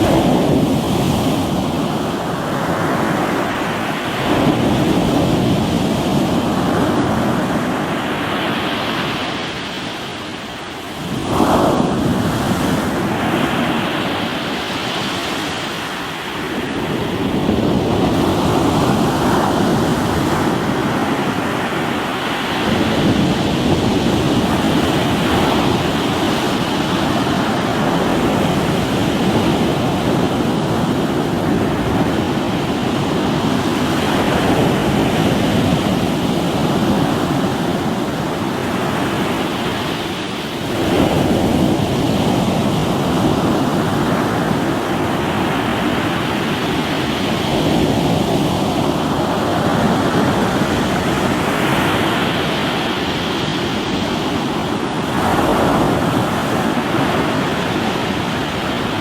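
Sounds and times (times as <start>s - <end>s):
waves breaking on rocky shore: 0.0s - 59.0s.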